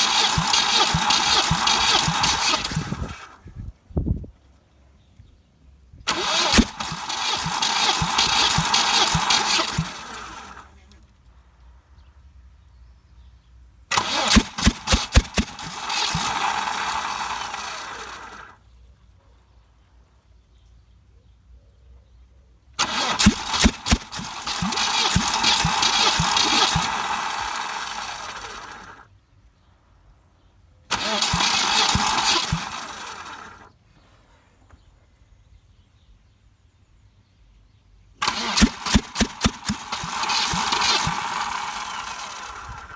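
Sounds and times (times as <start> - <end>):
car engine cranking and coughing: 0.0 - 3.6, 6.1 - 11.0, 13.9 - 18.4, 22.8 - 29.0, 30.9 - 33.6, 38.2 - 42.9.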